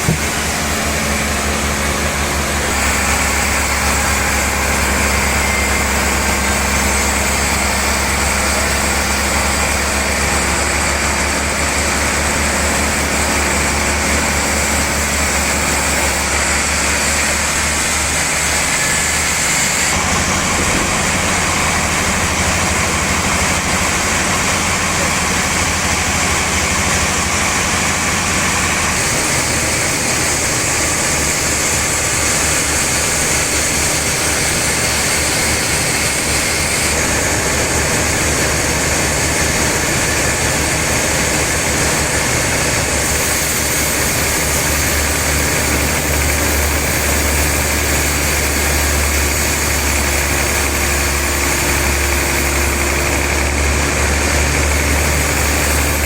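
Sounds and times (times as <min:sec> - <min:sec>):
low motor hum: 0:00.0 - 0:56.0.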